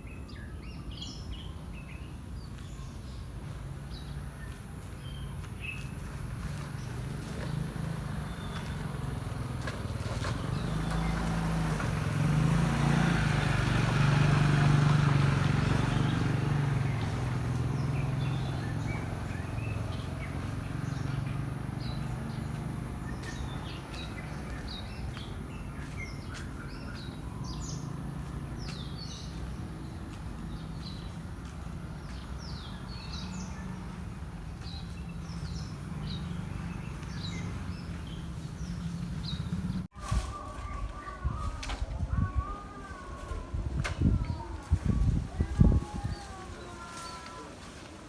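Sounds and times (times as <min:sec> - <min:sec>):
small birds chirping: 0:00.0 - 0:48.0
vehicle passing by: 0:03.4 - 0:40.2.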